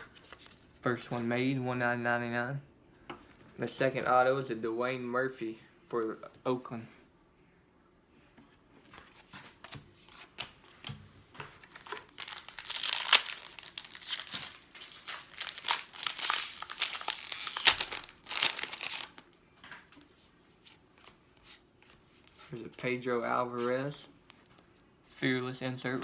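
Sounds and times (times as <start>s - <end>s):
plastic wrapper crinkling: 9.6s - 19.4s.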